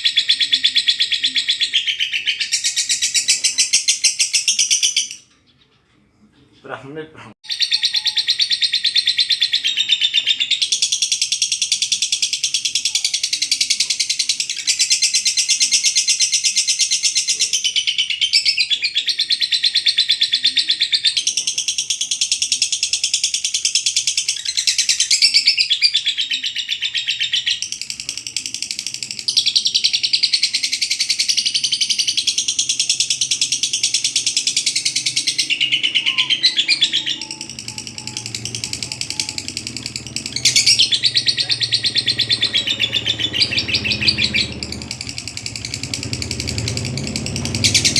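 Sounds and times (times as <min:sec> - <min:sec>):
lovebird chattering trills: 0:00.0 - 0:05.7, 0:07.4 - 0:47.9.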